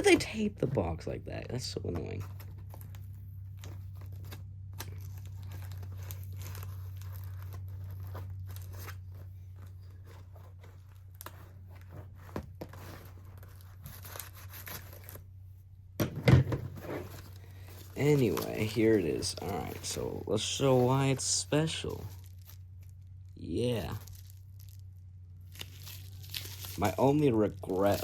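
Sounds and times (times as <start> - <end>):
low hum: 0.0 - 28.0
packing tape ripping: 3.6 - 9.9, 12.6 - 15.2, 25.5 - 28.0.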